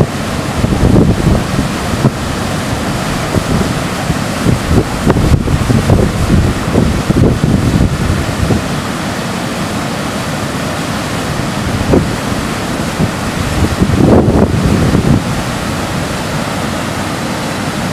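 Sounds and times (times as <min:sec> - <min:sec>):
wind buffeting microphone: 0:00.0 - 0:08.8, 0:11.5 - 0:16.2
waterfall rushing: 0:00.0 - 0:17.9.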